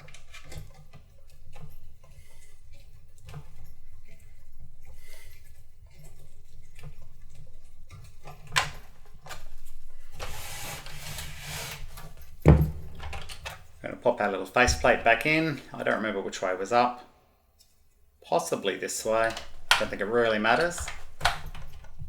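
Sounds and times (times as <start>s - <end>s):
scraping rustle: 0.0s - 16.8s
light clicks and knocks: 19.1s - 22.0s.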